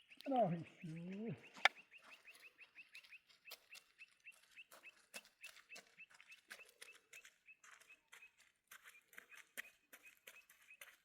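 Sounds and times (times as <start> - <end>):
small bird chirping rapidly: 0.0 - 11.0.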